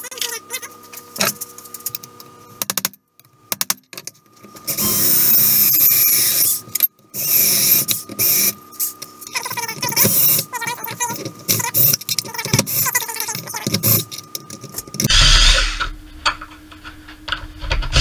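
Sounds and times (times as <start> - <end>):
electric drill grinding into metal: 4.7 - 8.6, 14.8 - 16.4, 17.7 - 18.0.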